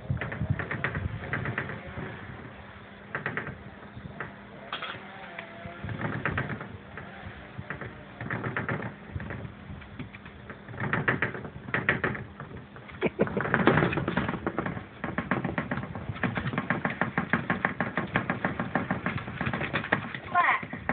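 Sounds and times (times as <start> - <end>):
household objects rattling: 5.7 - 20.9.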